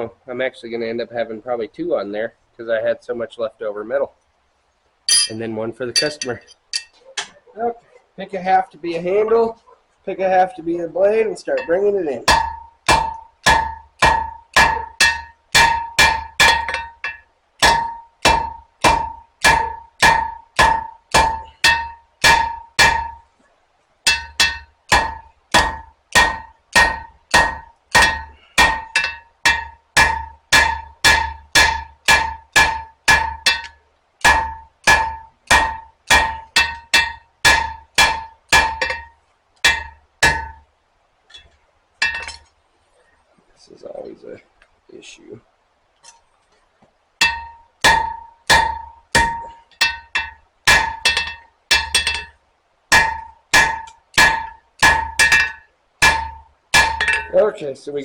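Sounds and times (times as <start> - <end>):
hammer ringing on anvil: 5.1 - 5.4.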